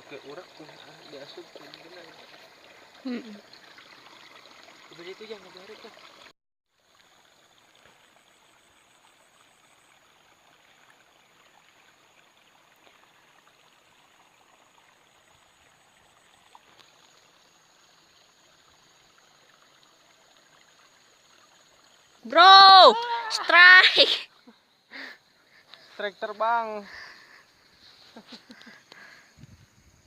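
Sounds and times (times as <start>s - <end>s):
faint stream water: 0.0s - 30.0s
small ticks: 16.5s - 17.2s, 28.5s - 29.1s.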